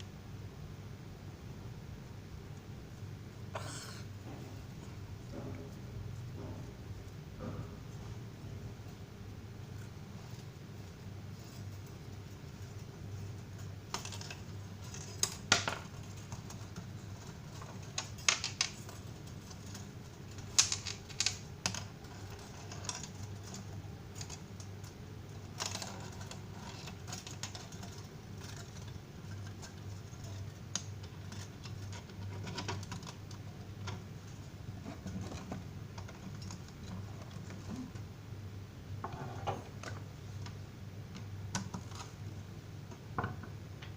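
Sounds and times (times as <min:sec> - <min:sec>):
small hard objects clicking: 0:13.6 - 0:34.1.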